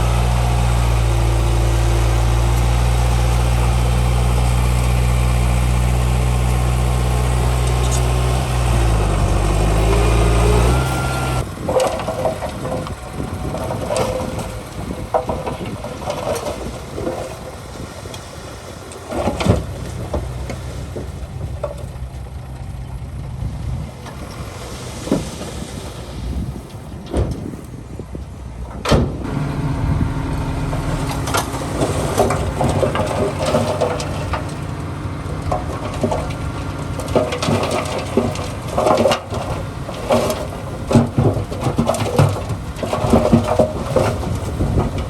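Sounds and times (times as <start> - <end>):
metallic clanks and rattles: 0.0 - 18.2, 28.6 - 45.0
diesel engine of heavy machinery: 0.0 - 45.0.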